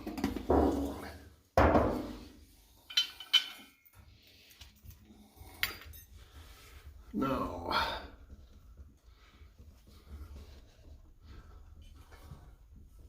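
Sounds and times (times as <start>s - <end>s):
metal stove parts clattering: 2.8s - 4.0s.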